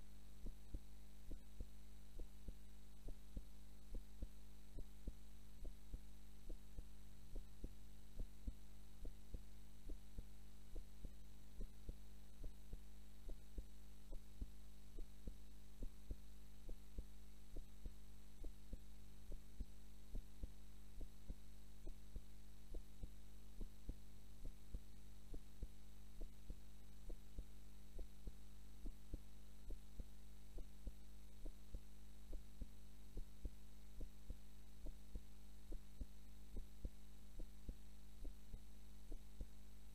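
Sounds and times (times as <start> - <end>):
heartbeat: 0.0 - 39.9
low electrical hum: 0.0 - 39.9.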